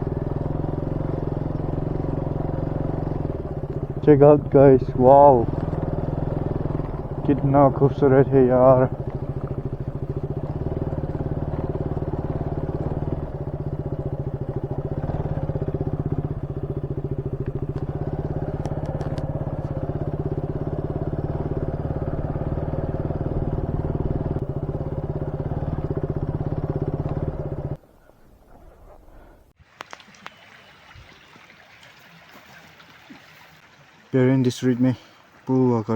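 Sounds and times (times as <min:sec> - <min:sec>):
motorcycle engine running: 0:00.0 - 0:27.8.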